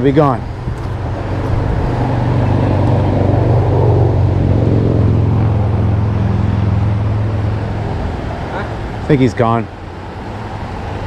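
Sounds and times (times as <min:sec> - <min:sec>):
boat motor running: 0:00.3 - 0:09.0.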